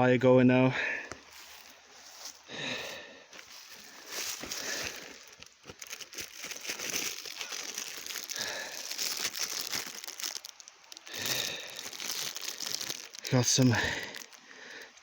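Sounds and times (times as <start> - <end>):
packaging crinkling: 1.3 - 15.0
packaging tearing: 3.5 - 14.8.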